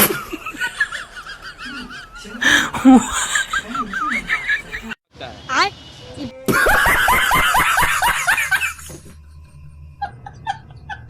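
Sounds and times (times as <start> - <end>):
rapid laughter: 0.0 - 5.0.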